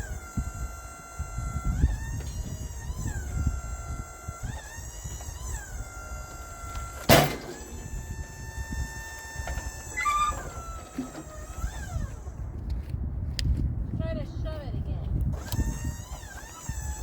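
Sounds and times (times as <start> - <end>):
sawmill engine running: 0.0 - 13.2, 15.0 - 17.0
sharp loud bang: 7.1 - 7.8.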